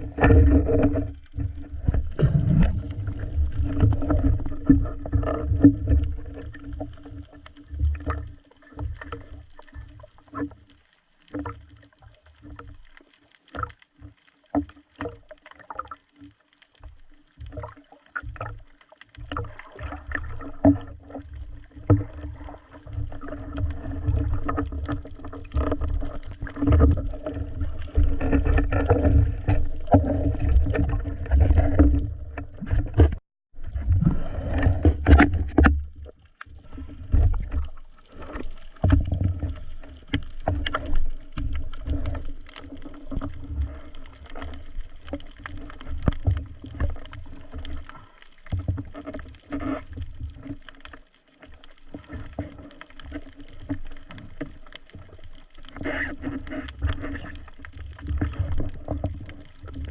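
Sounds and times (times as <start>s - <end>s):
water noise: 0.0s - 59.9s.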